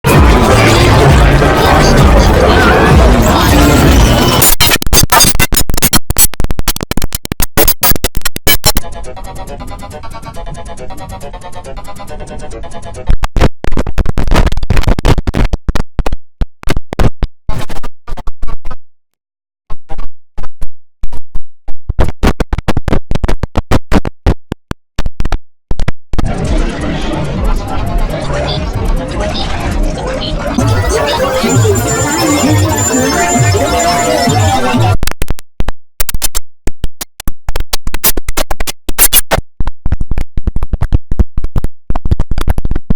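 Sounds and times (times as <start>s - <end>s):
stuttering chopped computer sound: 0.1s - 18.8s, 19.7s - 42.9s
stuttering computer shutdown sound: 26.3s - 35.0s.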